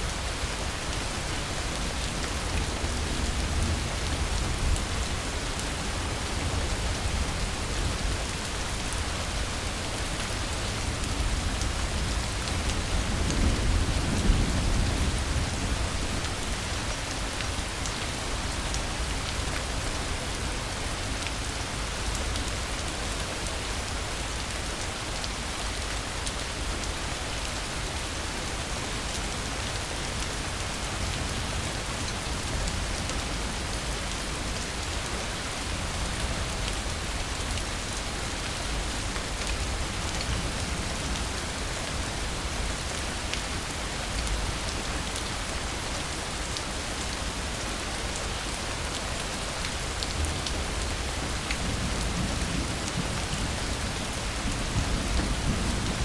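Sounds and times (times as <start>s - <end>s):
steady rain falling: 0.0s - 56.0s
low rumble of thunder: 11.2s - 16.8s, 51.6s - 56.0s.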